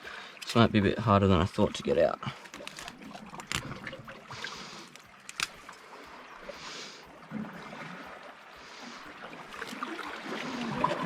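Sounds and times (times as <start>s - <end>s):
sharp click: 4.9s - 5.7s.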